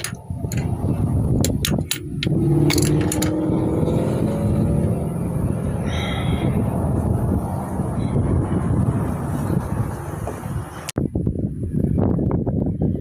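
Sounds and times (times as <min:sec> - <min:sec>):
sharp clicks and knocks: 0:00.0 - 0:03.5
engine rumble: 0:00.0 - 0:13.0.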